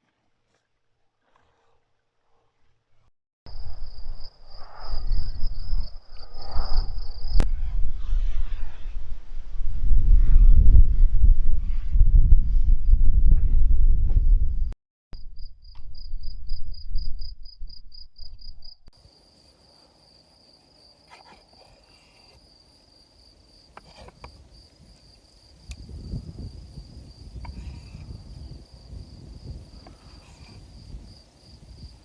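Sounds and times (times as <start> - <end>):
crickets chirping: 3.5 - 7.4, 15.2 - 32.0
low rumble: 3.5 - 15.4.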